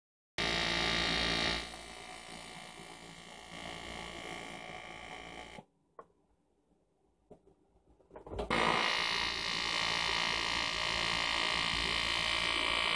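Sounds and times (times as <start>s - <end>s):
welding arc buzzing: 0.4s - 5.6s, 8.5s - 12.9s.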